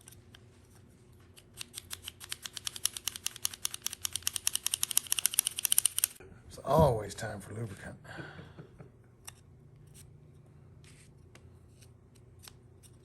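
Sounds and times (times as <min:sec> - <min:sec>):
wooden pieces clicking rapidly: 0:01.6 - 0:06.2.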